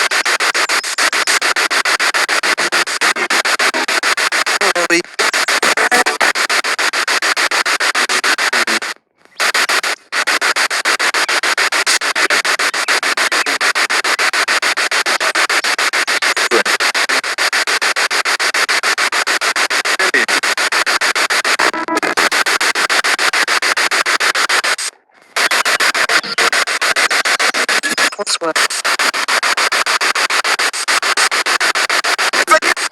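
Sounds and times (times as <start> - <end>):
pulsing radio static: 0.0 - 32.9.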